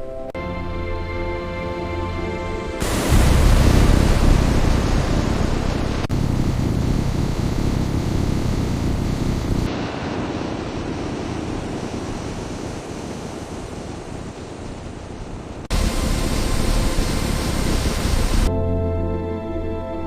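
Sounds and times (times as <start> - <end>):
rushing noise: 2.2 - 18.5
deep rumble: 2.8 - 12.9, 15.6 - 18.7.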